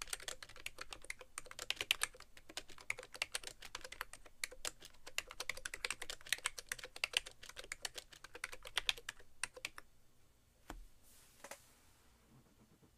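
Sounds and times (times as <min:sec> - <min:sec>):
fast typing on keyboard: 0:00.0 - 0:09.8.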